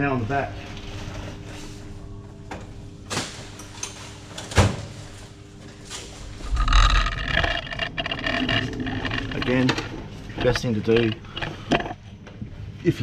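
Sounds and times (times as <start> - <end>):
steady hum: 5.2 - 13.0
metal parts and tools clunking: 6.4 - 12.0.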